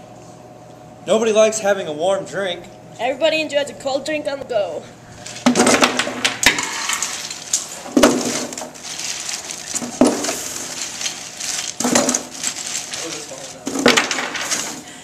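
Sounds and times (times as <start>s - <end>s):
objects rustling and clattering: 5.1s - 15.0s.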